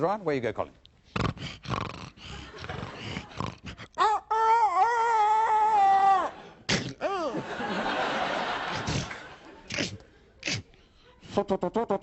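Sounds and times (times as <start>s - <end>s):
breathy noises: 1.0s - 7.4s
man making vocal sound effects: 1.2s - 7.4s, 8.7s - 12.0s.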